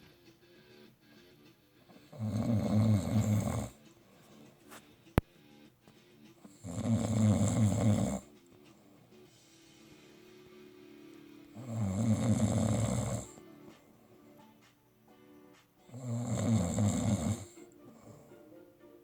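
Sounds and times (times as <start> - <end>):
person snoring: 1.9 - 3.8, 6.5 - 8.3, 11.6 - 13.4, 15.9 - 18.4.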